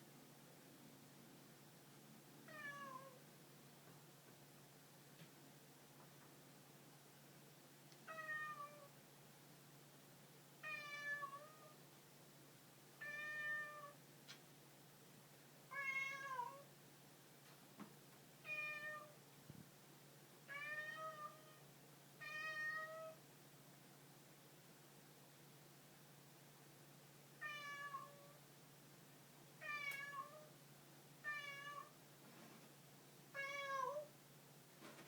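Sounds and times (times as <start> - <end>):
cat meowing: 2.5 - 3.2, 8.1 - 8.9, 10.6 - 11.8, 13.0 - 14.0, 15.7 - 16.6, 18.5 - 19.2, 22.2 - 23.2, 27.4 - 28.3, 31.2 - 31.9, 33.4 - 34.1.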